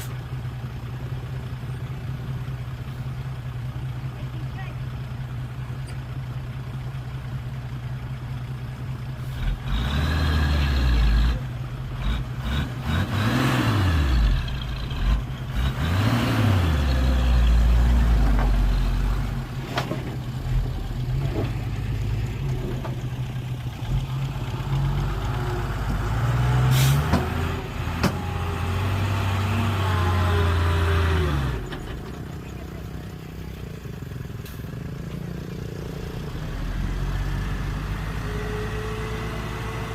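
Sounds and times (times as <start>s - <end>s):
heavy diesel engines running: 0.0s - 39.9s
engine revving: 9.2s - 19.6s, 23.9s - 31.8s, 35.8s - 39.9s.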